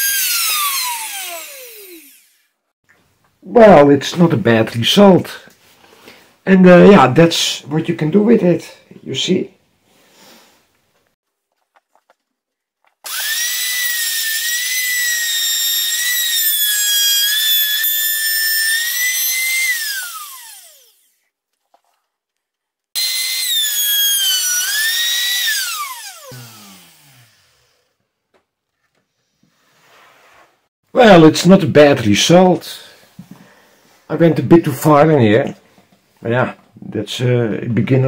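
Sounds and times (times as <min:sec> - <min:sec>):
trim router motor whining: 0:00.0 - 0:02.4, 0:13.1 - 0:21.1, 0:23.0 - 0:27.9.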